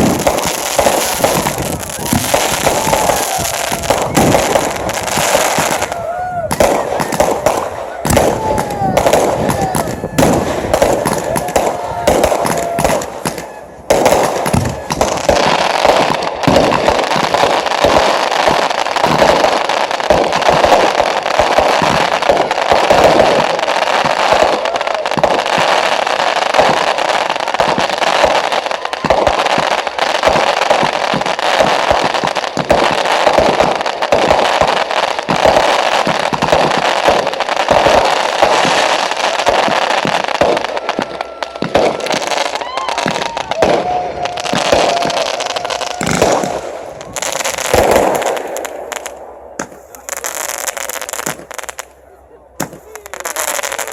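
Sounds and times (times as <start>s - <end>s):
fireworks bangs and crackling: 0.0s - 53.9s.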